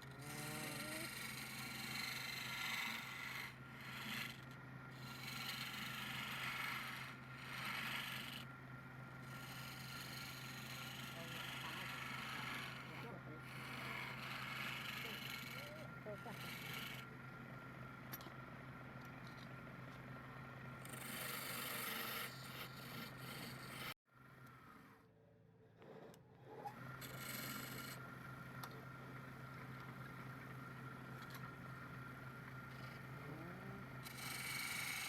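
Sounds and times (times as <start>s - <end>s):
turning tool scraping wood: 0.0s - 8.5s, 9.2s - 17.1s, 20.9s - 24.0s, 34.0s - 35.0s
lathe motor hum: 0.0s - 24.7s, 26.8s - 35.0s.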